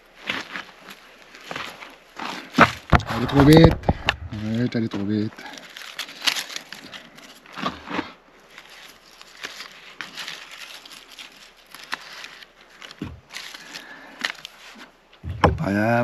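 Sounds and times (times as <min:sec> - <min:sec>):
dry twigs crinkling and crackling: 0:00.0 - 0:16.0
twigs snapping: 0:05.3 - 0:15.6.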